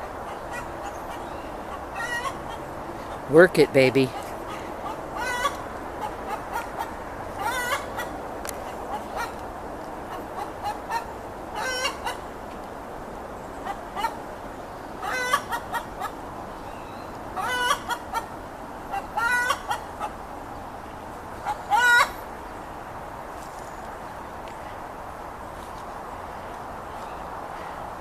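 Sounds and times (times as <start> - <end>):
hen clucking and squawking: 0.1 - 3.2, 4.1 - 9.4, 10.1 - 12.2, 15.0 - 16.2, 17.4 - 18.3, 18.9 - 20.2, 21.4 - 22.2.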